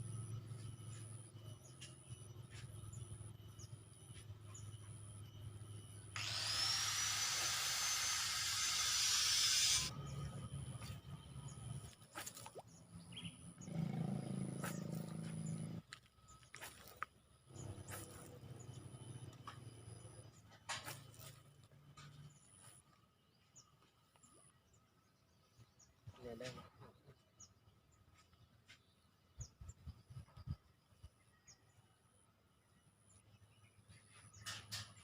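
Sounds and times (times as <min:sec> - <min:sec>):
fishing reel line whirring: 0:06.2 - 0:10.0.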